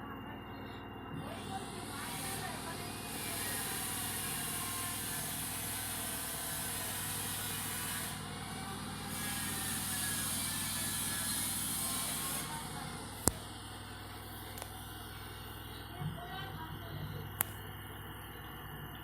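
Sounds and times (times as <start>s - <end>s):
washing machine humming: 0.0s - 19.0s.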